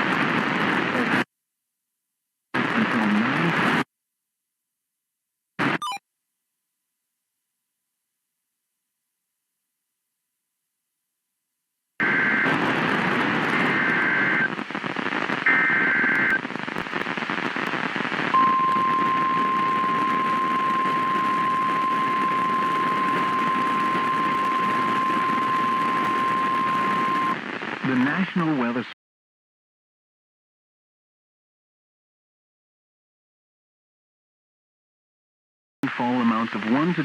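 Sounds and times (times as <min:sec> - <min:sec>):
radio static hiss: 0:00.0 - 0:01.3, 0:02.6 - 0:03.9, 0:05.6 - 0:06.0, 0:12.0 - 0:29.0, 0:35.8 - 0:37.0.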